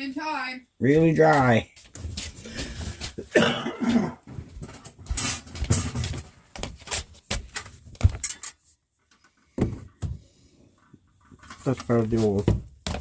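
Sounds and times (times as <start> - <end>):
metal parts and tools clattering: 7.6 - 8.6.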